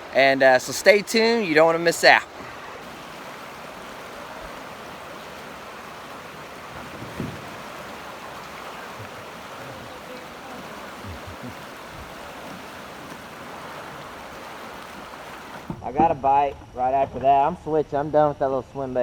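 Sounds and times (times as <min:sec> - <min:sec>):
creek water rushing over rapids: 0:00.0 - 0:15.8
low knock: 0:06.8 - 0:07.6.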